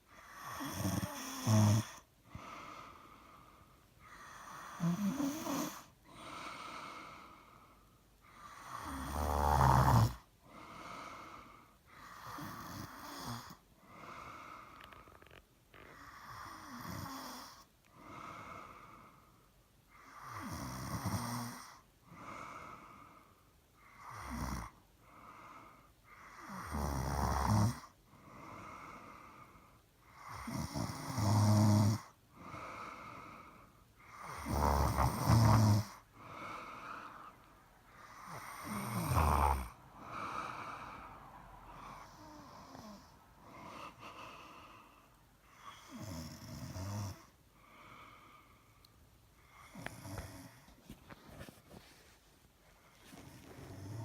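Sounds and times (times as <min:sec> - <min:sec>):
person snoring: 0:00.2 - 0:03.3, 0:04.0 - 0:07.5, 0:08.3 - 0:19.1, 0:24.0 - 0:25.6, 0:26.2 - 0:29.4, 0:30.1 - 0:48.4, 0:49.4 - 0:50.7, 0:53.1 - 0:54.0.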